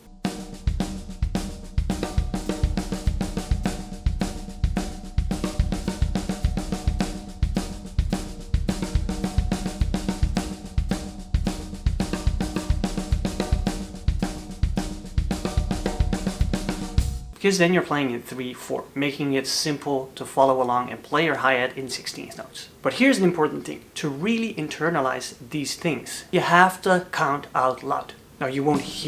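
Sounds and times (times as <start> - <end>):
drum kit playing a fill: 0.0 - 17.4, 28.7 - 29.0.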